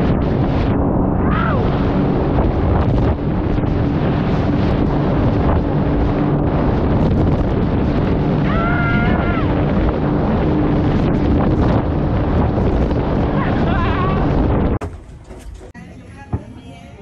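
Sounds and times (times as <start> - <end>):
jet ski engine hum: 0.0 - 17.0
wind buffeting microphone: 0.0 - 17.0
water rushing: 1.2 - 14.8
person shouting: 8.4 - 9.6, 13.4 - 14.3.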